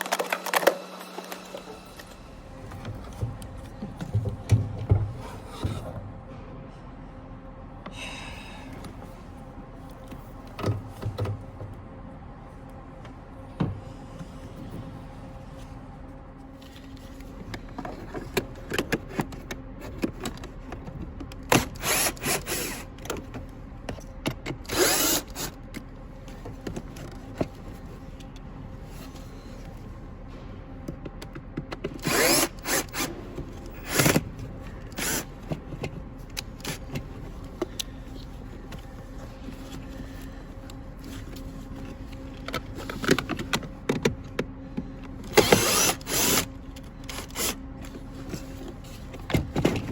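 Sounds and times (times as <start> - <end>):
power drill-driver running: 21.6 - 22.9, 24.7 - 25.5, 32.0 - 33.2, 34.9 - 35.3, 45.3 - 47.6.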